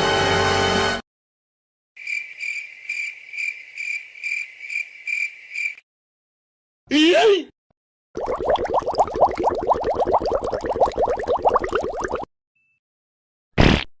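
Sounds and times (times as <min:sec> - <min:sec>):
crickets chirping: 0:02.0 - 0:05.8.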